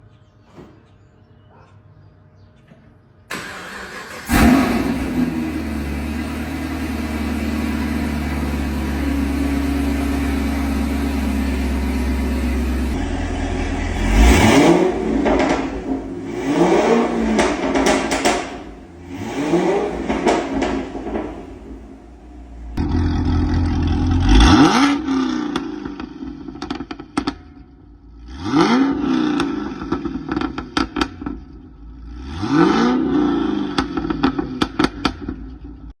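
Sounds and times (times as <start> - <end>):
car engine idling and revving: 3.3 - 36.0
exhaust crackles and pops: 6.2 - 23.6, 24.4 - 27.8.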